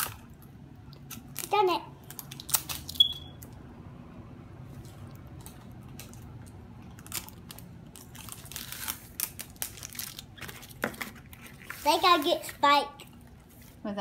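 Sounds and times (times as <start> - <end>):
packaging crinkling and tearing: 1.0 - 3.0, 5.3 - 12.5.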